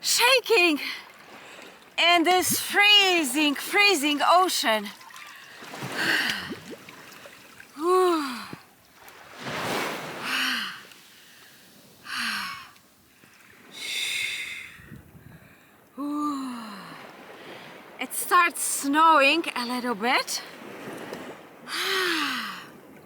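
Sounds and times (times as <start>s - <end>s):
woman gasping and breathing hard: 5.9s - 6.6s, 7.8s - 8.7s, 12.1s - 12.8s, 21.7s - 22.7s.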